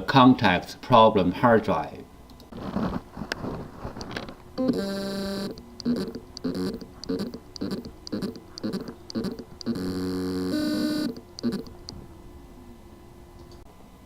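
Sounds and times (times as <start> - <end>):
buzzing tone: 4.6 - 12.0
hard drive motor pulsing: 4.6 - 12.0.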